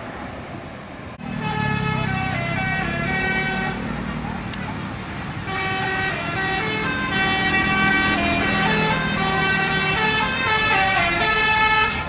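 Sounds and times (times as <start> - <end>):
low rumble of bus: 0.0 - 12.0
multi-tone air horn melody: 1.4 - 3.8, 5.4 - 12.0.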